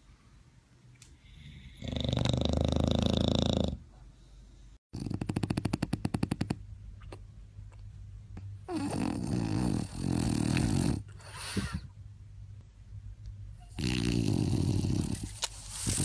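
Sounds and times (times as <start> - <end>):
dog snoring: 1.2 - 3.8, 4.9 - 6.6, 8.6 - 11.8, 13.6 - 16.0.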